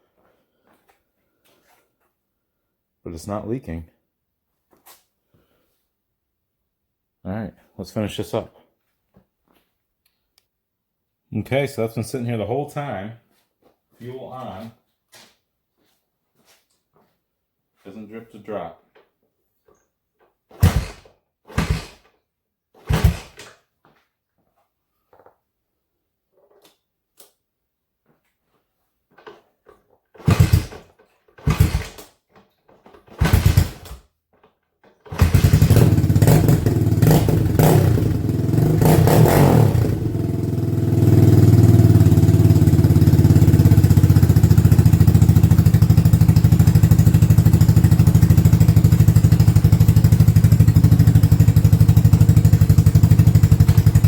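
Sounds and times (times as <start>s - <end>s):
four-stroke engine starting and running: 22.8s - 23.4s, 30.1s - 32.1s, 33.1s - 34.0s, 35.0s - 54.0s
engine revving: 35.2s - 46.0s, 52.6s - 54.0s.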